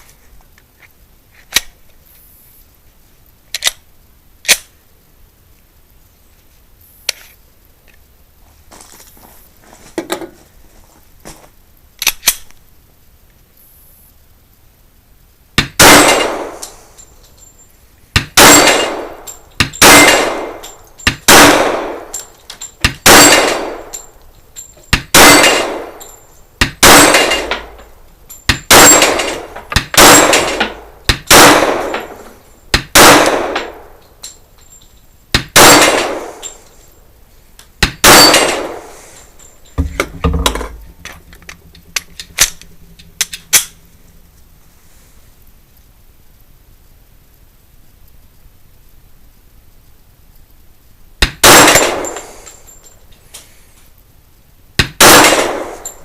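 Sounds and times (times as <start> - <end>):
soft clanks and knocks: 9.8 - 10.4, 39.7 - 43.4
pistol shots with echo: 15.6 - 16.7, 18.2 - 22.2, 22.8 - 24.0, 25.0 - 26.0, 26.6 - 27.7, 28.5 - 32.2, 32.8 - 33.9, 35.4 - 36.6, 37.8 - 38.9, 51.2 - 52.3, 54.8 - 56.0.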